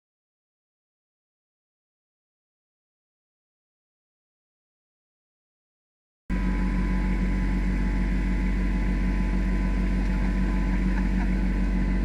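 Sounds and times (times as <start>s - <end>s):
tractor diesel engine running: 6.3s - 12.0s.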